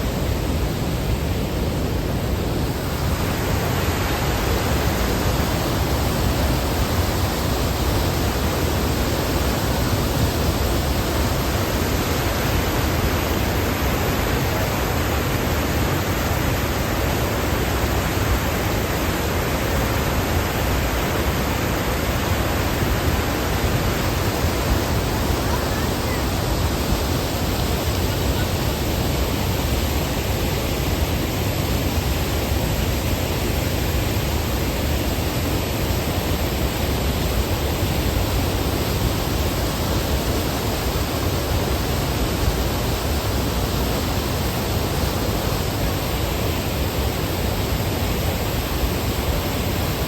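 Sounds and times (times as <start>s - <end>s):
waterfall rushing: 0.0s - 50.0s.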